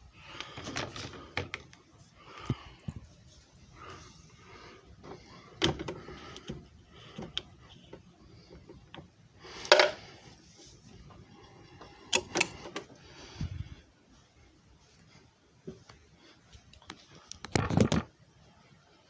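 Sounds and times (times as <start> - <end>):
hard plastic parts clicking: 12.1 - 12.9.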